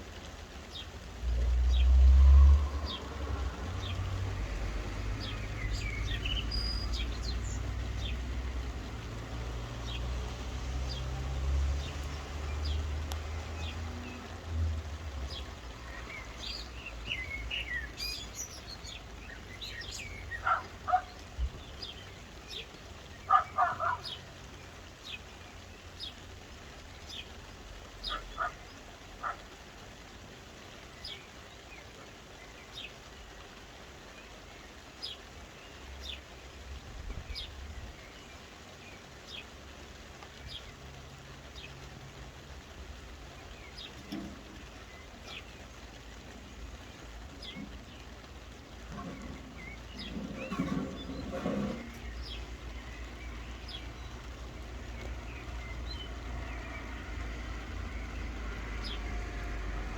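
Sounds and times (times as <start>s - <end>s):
soft rain falling: 0.0s - 59.9s
lower bird calls: 15.3s - 24.4s, 28.0s - 29.5s, 43.3s - 59.5s.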